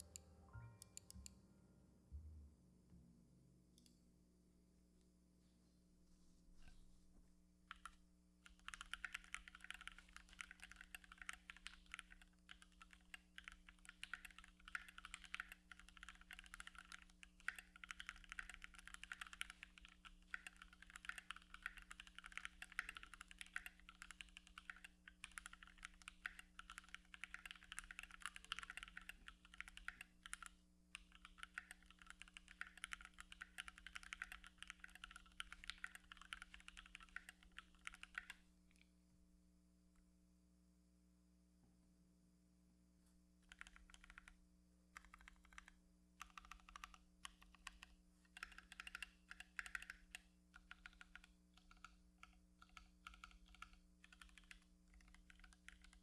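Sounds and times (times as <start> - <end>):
mechanical keyboard typing: 0.0 - 1.3, 7.7 - 38.4, 43.5 - 44.4, 45.0 - 56.0.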